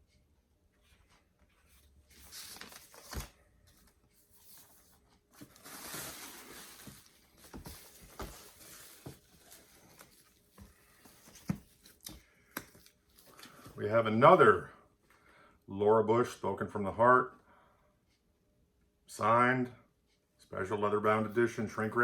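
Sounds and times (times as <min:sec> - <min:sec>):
wrapping material rustling: 0:04.3 - 0:10.6
books knocking: 0:06.7 - 0:09.5.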